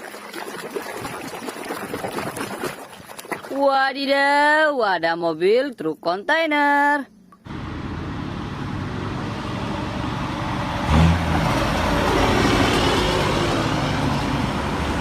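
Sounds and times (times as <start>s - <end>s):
truck engine running: 7.5s - 15.0s.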